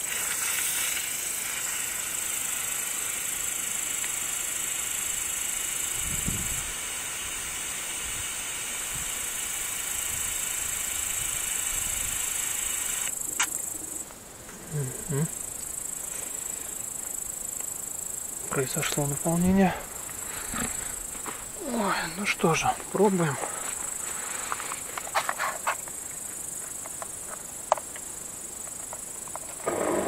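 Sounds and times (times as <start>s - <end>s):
air hissing from valve: 0.0s - 13.2s.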